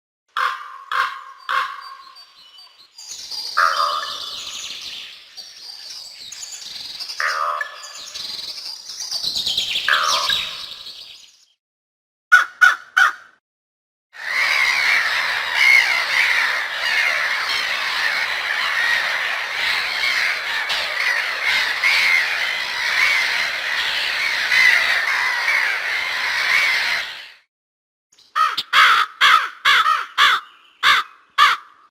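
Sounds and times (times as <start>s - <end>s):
crows cawing: 0.3s - 1.9s, 3.6s - 4.4s, 9.9s - 10.6s, 12.3s - 13.4s, 14.2s - 27.4s, 28.4s - 31.9s
chatter of a crow flock: 3.5s - 5.1s, 7.1s - 8.3s, 9.8s - 11.0s, 14.2s - 27.5s, 28.4s - 31.8s.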